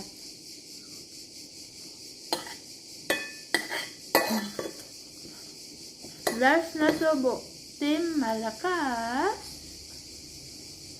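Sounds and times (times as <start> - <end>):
steady high hiss: 0.0 - 10.9
cutlery scraping against a plate: 2.3 - 4.9.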